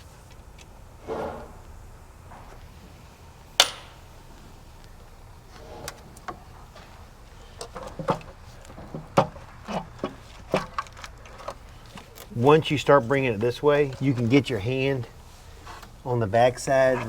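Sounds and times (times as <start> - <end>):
tools and metal parts clinking: 3.6 - 4.2.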